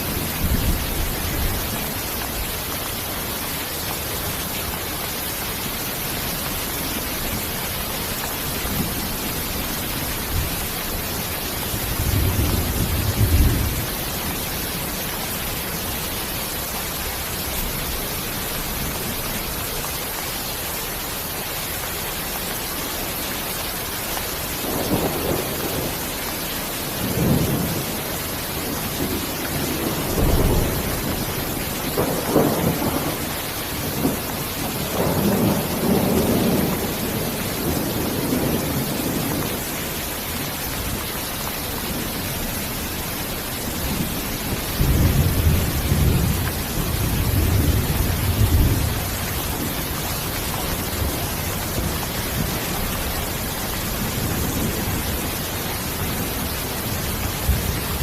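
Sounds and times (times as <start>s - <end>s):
thunder rumbling: 0.0s - 3.0s, 8.5s - 15.0s, 26.9s - 39.8s, 41.9s - 58.0s
steady rain: 0.0s - 58.0s.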